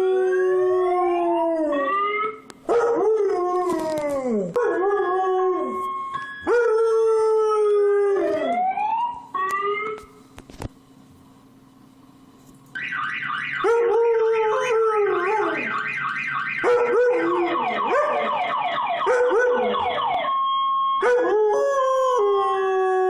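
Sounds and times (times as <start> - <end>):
electronic siren sweeping: 0.0 - 2.5, 5.1 - 10.1, 12.8 - 23.0.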